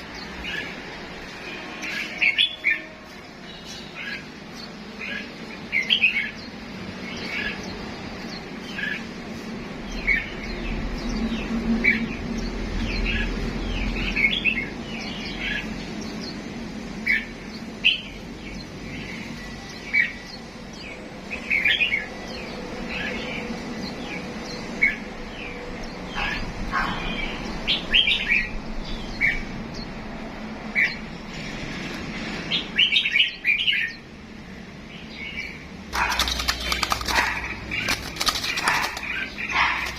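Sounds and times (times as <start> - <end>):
cage birds chirping: 0.0 - 39.9.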